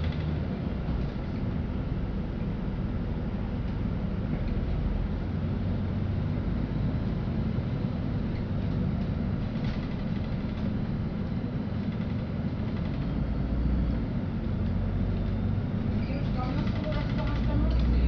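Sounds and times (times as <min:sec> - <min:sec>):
bus engine rumble: 0:00.0 - 0:18.0.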